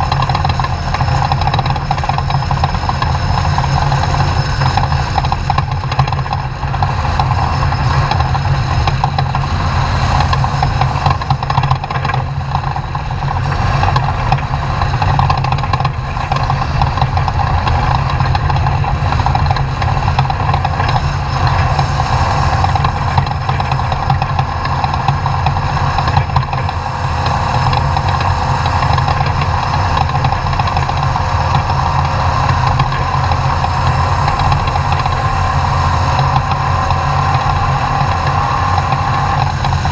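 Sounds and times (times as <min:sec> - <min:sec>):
truck engine droning: 0:00.0 - 0:39.9.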